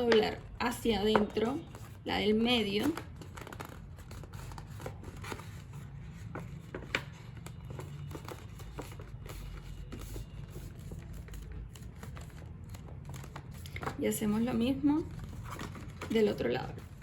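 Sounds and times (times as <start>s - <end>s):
paper clicks and taps: 1.0s - 1.8s, 6.2s - 14.0s
cardstock rustling: 2.6s - 17.0s.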